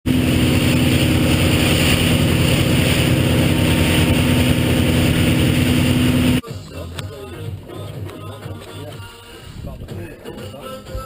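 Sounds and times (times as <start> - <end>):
motorboat engine running: 0.1 - 6.4.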